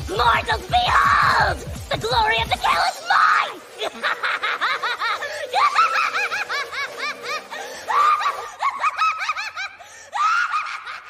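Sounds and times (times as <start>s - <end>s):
high-pitched cackling laugh: 3.7s - 11.0s.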